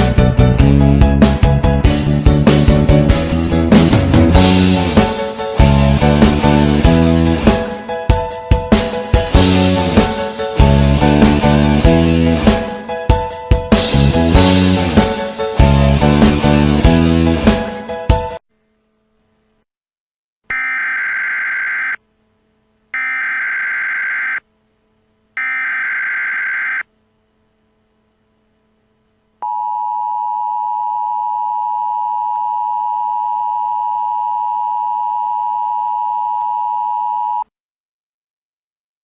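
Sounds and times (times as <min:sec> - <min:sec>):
buzzing digital data: 0:20.5 - 0:22.0, 0:23.0 - 0:24.4, 0:25.4 - 0:26.8
two-tone attention signal: 0:25.4 - 0:26.8.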